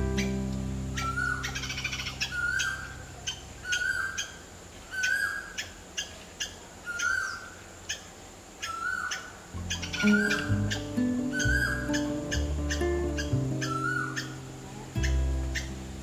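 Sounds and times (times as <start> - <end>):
acoustic guitar chord: 0.0 - 3.2, 9.6 - 16.0
bird calling: 0.0 - 16.0.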